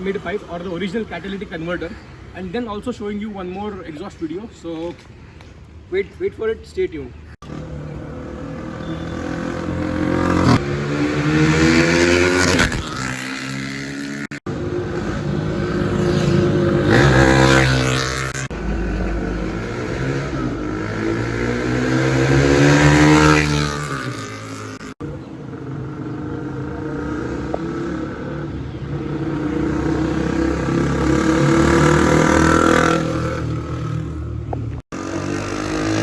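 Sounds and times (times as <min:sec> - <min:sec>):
motorcycle engine revving: 0:07.4 - 0:36.0.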